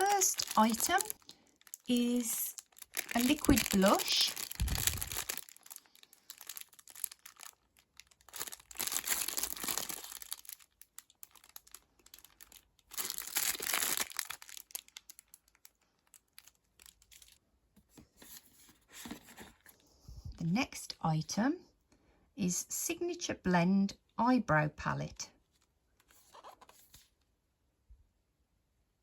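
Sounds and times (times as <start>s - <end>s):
packaging rustling and crinkling: 0.0s - 17.4s.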